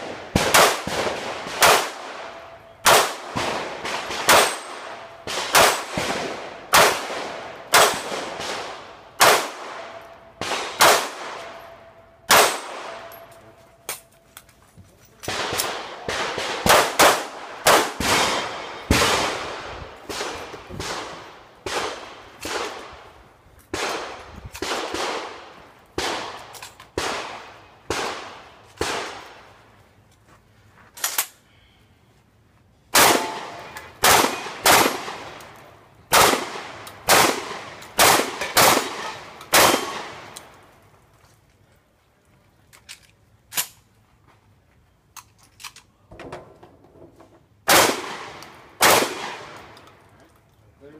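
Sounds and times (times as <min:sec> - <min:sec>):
gunshots with echo: 0:00.0 - 0:11.6, 0:12.3 - 0:13.1, 0:15.3 - 0:22.8, 0:33.0 - 0:35.3.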